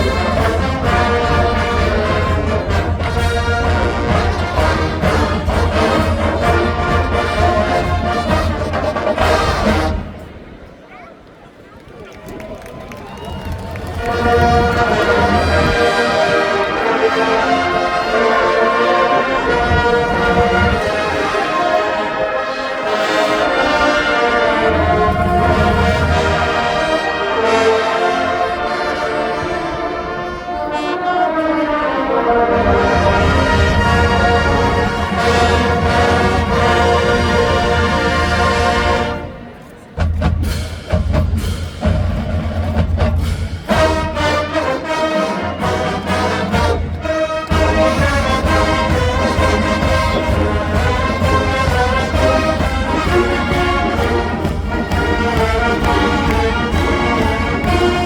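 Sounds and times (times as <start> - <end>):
marching band playing: 0.0 - 10.7, 13.4 - 58.0.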